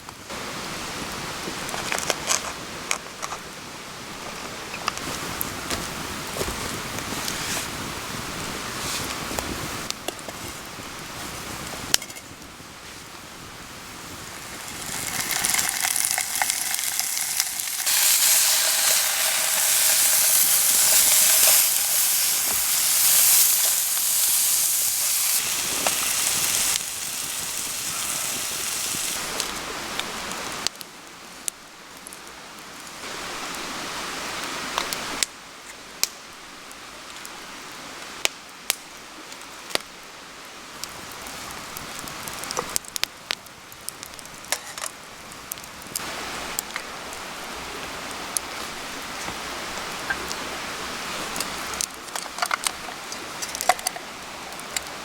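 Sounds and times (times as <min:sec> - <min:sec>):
burning wood crackling: 0:04.8 - 0:30.8
food sizzling over campfire: 0:04.8 - 0:35.2, 0:40.6 - 0:55.0.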